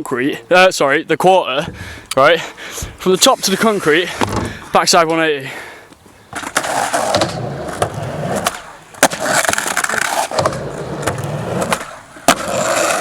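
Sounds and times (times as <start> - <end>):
wheels rolling over concrete: 6.3 - 13.0.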